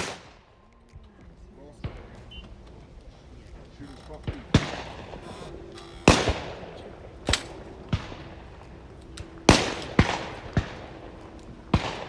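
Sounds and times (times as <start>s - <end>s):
shotgun shots: 0.0s - 0.6s, 4.2s - 12.0s.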